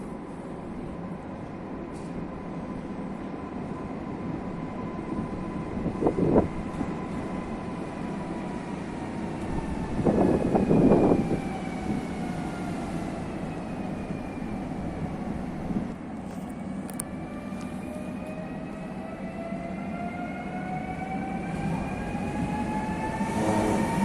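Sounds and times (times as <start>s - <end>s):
train drive whine: 0.0s - 24.0s
train rumbling: 0.0s - 24.0s.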